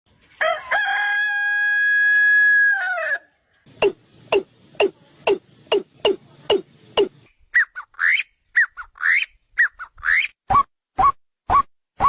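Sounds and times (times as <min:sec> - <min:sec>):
rooster crowing: 0:00.4 - 0:03.4
bird calling: 0:03.7 - 0:11.7.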